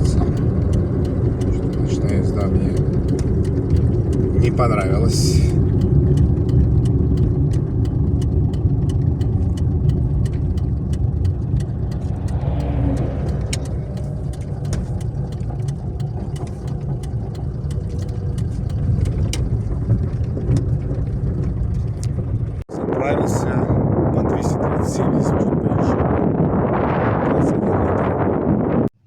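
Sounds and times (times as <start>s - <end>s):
light ticks: 0.0s - 22.2s
engine and road rumble: 0.0s - 29.0s.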